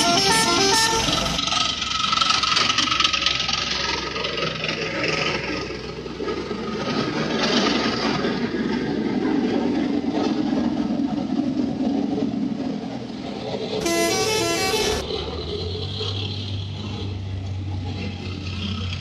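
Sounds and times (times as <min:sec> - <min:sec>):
multi-tone musical vehicle horn: 0:00.0 - 0:01.4, 0:13.8 - 0:15.0
heavy vehicle engine rumble: 0:00.0 - 0:19.0.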